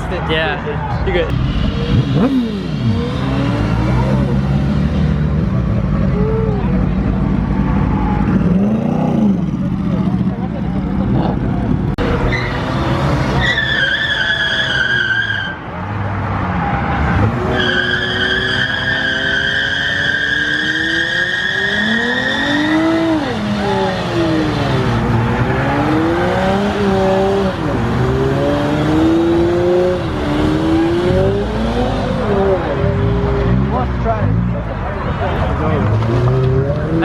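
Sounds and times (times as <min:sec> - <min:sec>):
car engine revving: 0:01.3 - 0:15.2, 0:15.9 - 0:37.0
tyres squealing: 0:12.2 - 0:15.6, 0:16.5 - 0:24.6.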